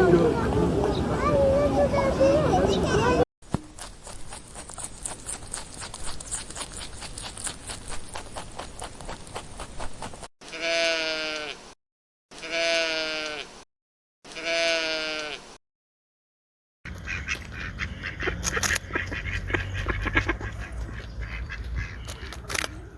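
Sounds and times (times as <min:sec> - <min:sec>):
sheep bleating: 0:10.4 - 0:11.6, 0:12.4 - 0:13.5, 0:14.3 - 0:15.4.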